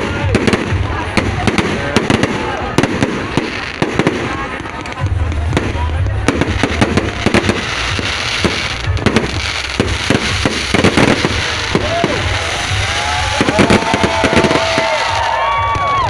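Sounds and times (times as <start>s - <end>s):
fireworks bangs and crackles: 0.0s - 16.0s
whistling fireworks: 5.6s - 16.0s.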